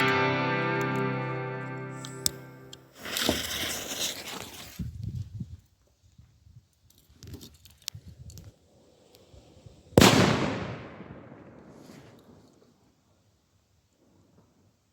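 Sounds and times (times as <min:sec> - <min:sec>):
faint clicks and rustles: 0:03.1 - 0:09.3
firecracker bang with echo: 0:10.0 - 0:12.1.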